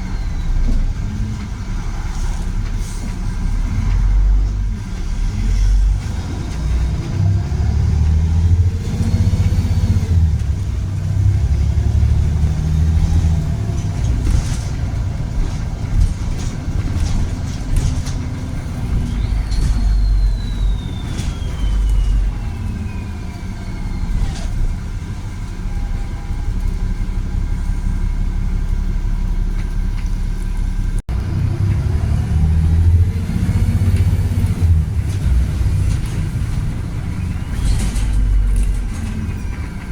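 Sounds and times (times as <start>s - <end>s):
bus diesel engine rumble: 0.0s - 39.9s
gearbox whine: 8.5s - 28.2s.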